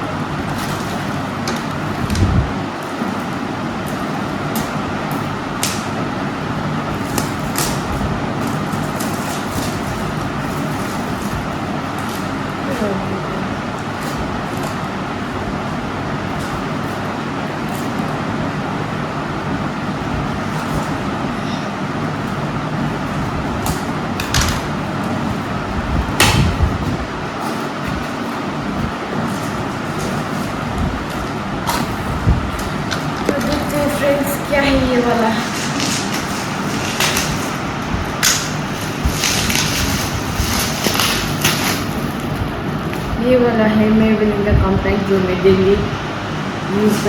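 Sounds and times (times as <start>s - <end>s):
packaging crinkling and tearing: 6.9s - 12.7s, 23.0s - 43.0s.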